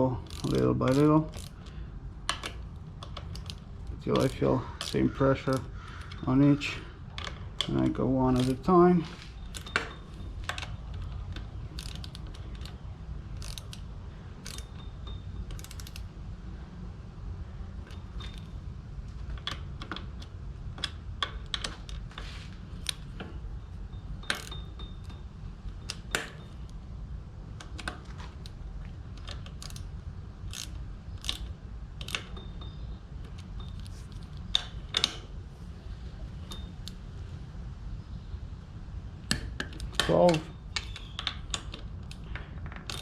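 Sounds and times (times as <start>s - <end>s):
low steady hum: 0.0s - 43.0s
torque wrench ratchet clicking: 0.2s - 1.7s, 11.8s - 13.8s, 14.4s - 16.1s, 29.2s - 32.4s.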